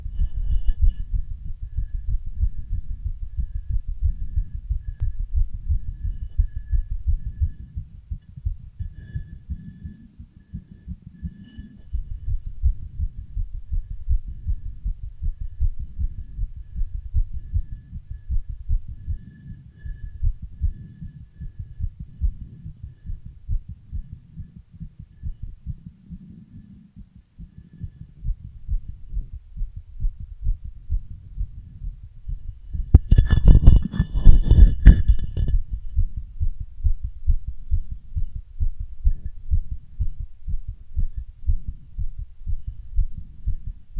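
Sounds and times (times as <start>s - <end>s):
heartbeat thumps: 0.0s - 43.9s
loud scraping noise: 33.0s - 35.6s.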